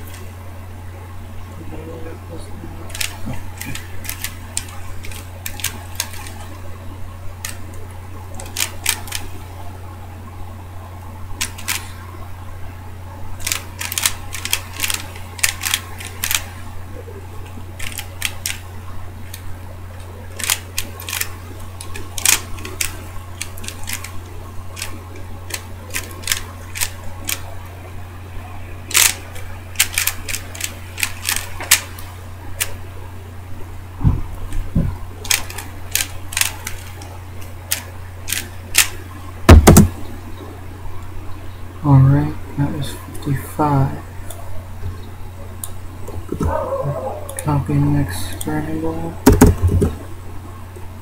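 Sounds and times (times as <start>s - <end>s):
steady low hum: 0.0s - 51.0s
plastic puzzle cube clicking: 2.9s - 6.4s, 8.4s - 9.3s, 11.4s - 11.9s, 13.4s - 16.5s, 17.8s - 18.6s, 20.4s - 24.2s, 24.8s - 27.4s, 28.9s - 29.2s, 29.8s - 32.0s, 35.2s - 37.0s, 37.7s - 38.9s.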